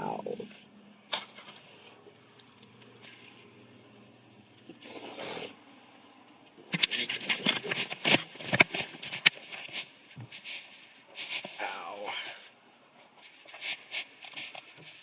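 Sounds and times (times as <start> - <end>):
clicks scrapes and rattles: 6.7 - 10.6, 13.2 - 15.0.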